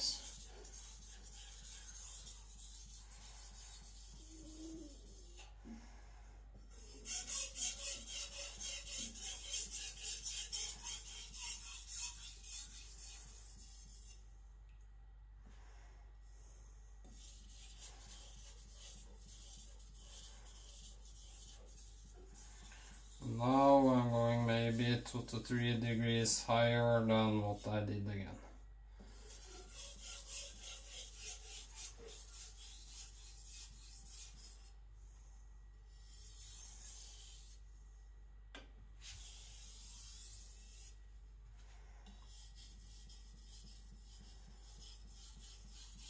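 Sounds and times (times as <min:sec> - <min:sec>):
knife scraping on whetstone: 0:00.0 - 0:05.5, 0:06.7 - 0:14.2, 0:17.1 - 0:25.1, 0:29.1 - 0:34.7, 0:36.0 - 0:37.6, 0:42.2 - 0:46.0.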